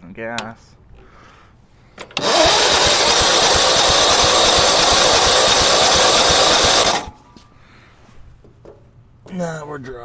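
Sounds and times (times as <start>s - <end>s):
lawn mower engine cranking: 2.0s - 7.2s.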